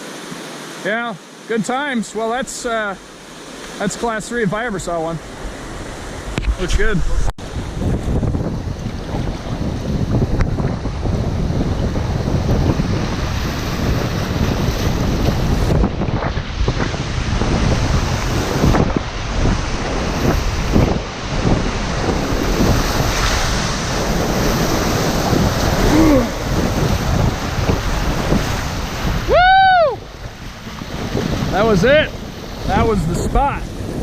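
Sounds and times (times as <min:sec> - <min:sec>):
rushing whitewater: 0:00.0 - 0:34.0
wind buffeting microphone: 0:03.6 - 0:34.0
person whooping: 0:25.8 - 0:26.4, 0:29.2 - 0:30.1.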